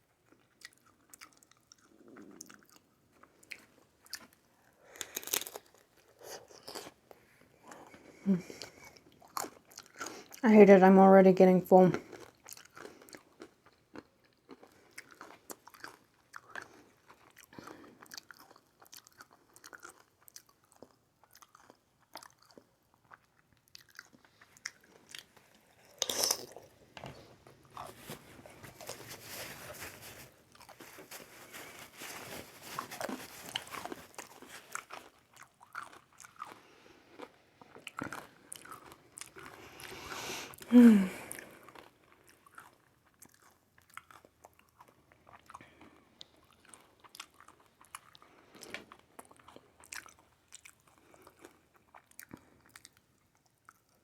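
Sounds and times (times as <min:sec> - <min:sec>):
wet chewing with mouth clicks: 0:00.0 - 0:10.4, 0:11.9 - 0:54.0.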